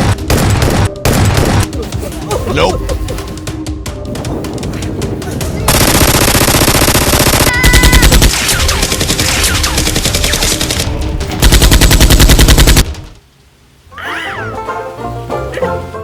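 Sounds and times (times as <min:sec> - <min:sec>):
music: 0:00.0 - 0:05.8, 0:06.8 - 0:13.2, 0:13.9 - 0:16.0
machine-gun bursts: 0:05.7 - 0:12.9.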